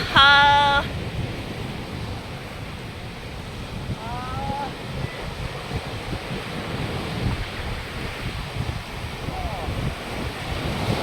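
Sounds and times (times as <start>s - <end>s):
surf washing: 0.0s - 11.0s
wind buffeting microphone: 0.0s - 11.0s
faint voice: 4.0s - 4.8s.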